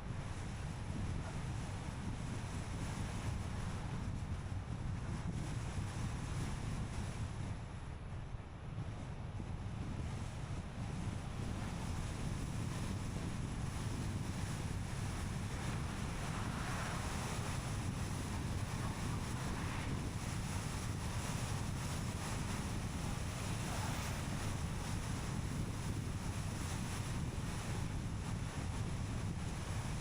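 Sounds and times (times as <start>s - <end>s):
wind noise: 0.0s - 30.0s
tyre and road rumble: 12.6s - 26.0s.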